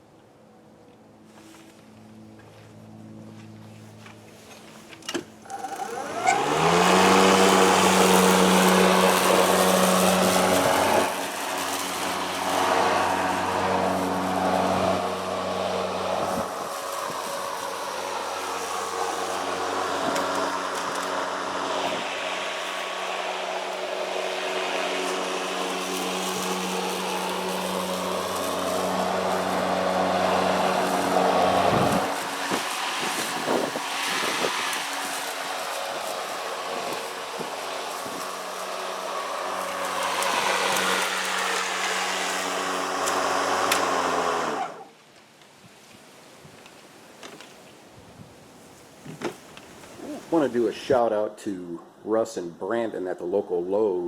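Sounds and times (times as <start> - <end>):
electric lawnmower running: 5.0 - 45.0.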